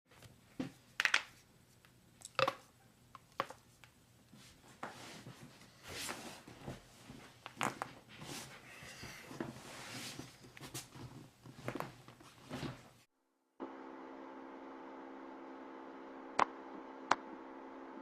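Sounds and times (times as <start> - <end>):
soft rustling of movement: 3.6 - 13.1.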